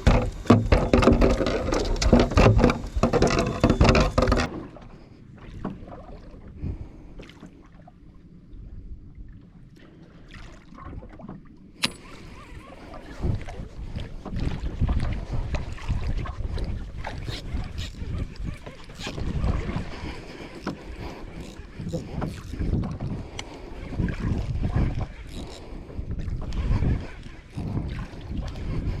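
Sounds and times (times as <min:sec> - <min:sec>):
faint clicks and knocks: 0:00.0 - 0:04.6
boat engine running: 0:00.0 - 0:04.9, 0:11.8 - 0:29.0
wind and water noise: 0:00.0 - 0:29.0.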